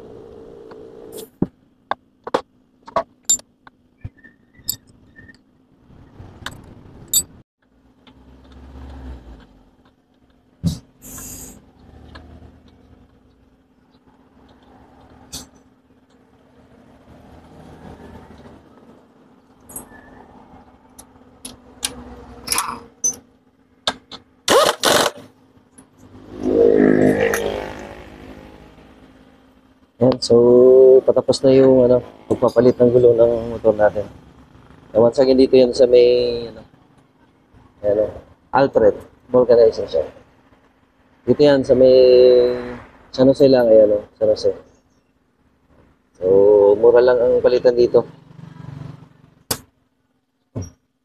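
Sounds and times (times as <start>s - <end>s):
droning mechanical sound: 0.0s - 50.9s
metallic clinks on wheel: 2.9s - 3.5s, 4.6s - 5.0s, 6.4s - 7.4s, 19.5s - 20.3s, 22.4s - 23.4s
short loud noisy bursts: 24.4s - 25.3s.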